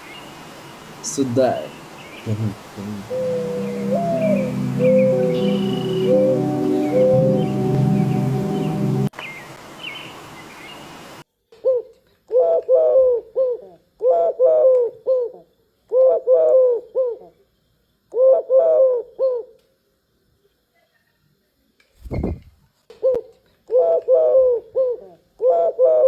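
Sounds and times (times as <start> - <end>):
dove cooing: 2.8 - 7.7, 12.4 - 15.3, 15.9 - 17.3, 18.2 - 19.4, 23.7 - 26.0.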